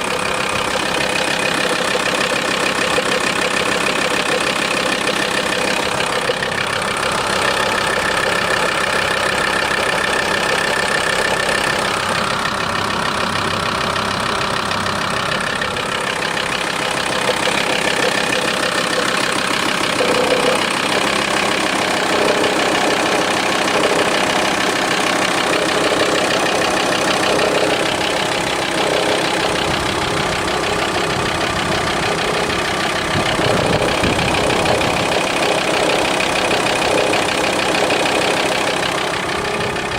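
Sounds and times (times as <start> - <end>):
diesel engine idling: 0.0 - 39.9
mechanical noise at idle: 15.2 - 39.9.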